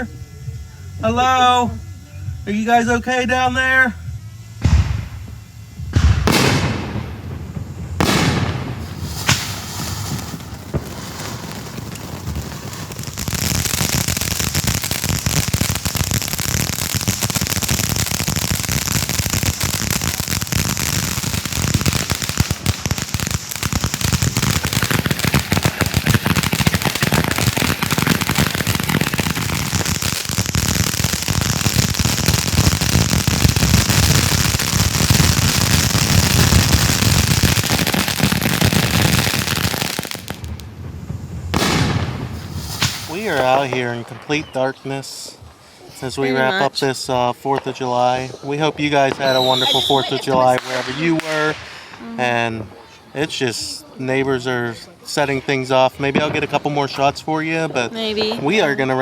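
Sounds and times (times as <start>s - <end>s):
firework bangs: 3.7s - 45.7s, 47.0s - 53.9s, 54.8s - 59.0s
firework crackling pops: 4.4s - 44.6s, 47.5s - 52.9s, 56.0s - 57.2s.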